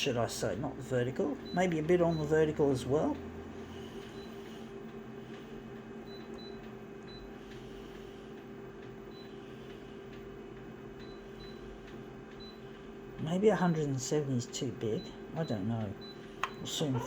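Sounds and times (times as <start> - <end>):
photocopier humming: 0.0 - 17.0.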